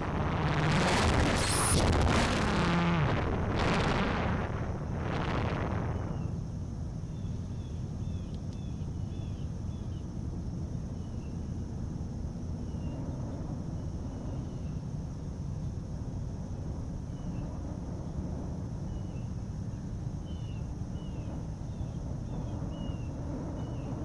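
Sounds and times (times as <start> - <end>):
loud whoosh: 0.0 - 6.1
high insect drone: 0.0 - 24.0
low rumble: 0.0 - 24.0
faint bird chirps: 5.9 - 6.4, 7.0 - 10.1, 10.9 - 11.6, 12.6 - 14.9, 17.0 - 17.6, 18.8 - 24.0.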